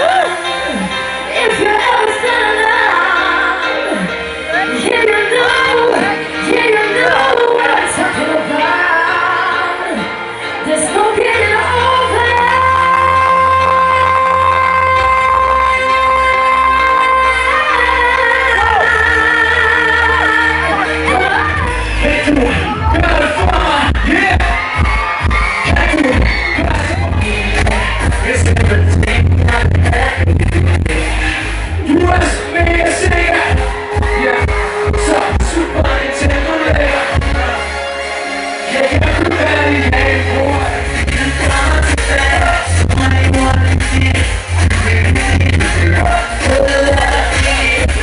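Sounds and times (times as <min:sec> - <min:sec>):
pop dance music with singing: 0:00.0 - 0:48.0
crowd shouting: 0:17.9 - 0:28.4, 0:31.9 - 0:42.6
sustained chord with heavy bass: 0:25.7 - 0:48.0.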